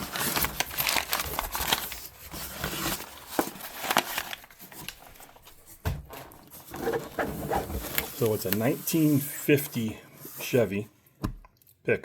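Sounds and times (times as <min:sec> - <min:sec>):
packaging rustling and crinkling: 0:00.0 - 0:10.6.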